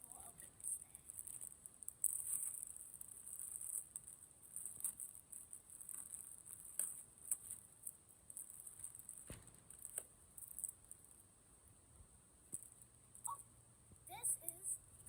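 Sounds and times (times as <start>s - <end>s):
packaging crinkling and rustling: 1.0s - 11.2s.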